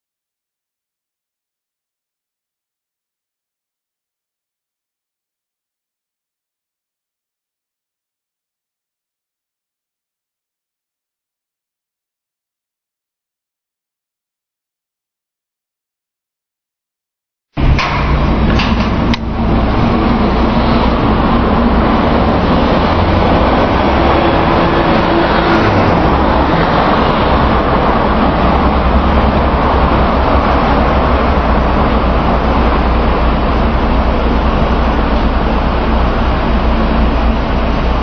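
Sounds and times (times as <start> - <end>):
car engine running: 17.6 - 38.0
road noise: 17.6 - 38.0.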